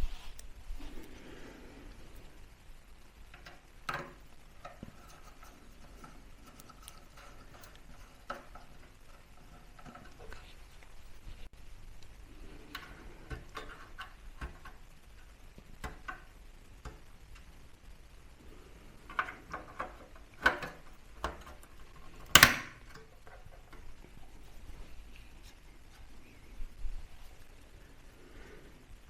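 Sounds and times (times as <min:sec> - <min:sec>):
computer parts clicking: 0:19.1 - 0:23.5.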